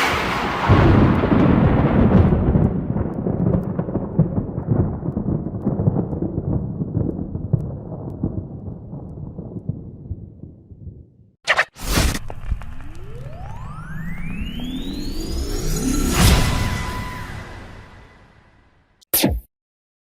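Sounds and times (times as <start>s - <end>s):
rolling thunder rumble: 0.0s - 11.1s.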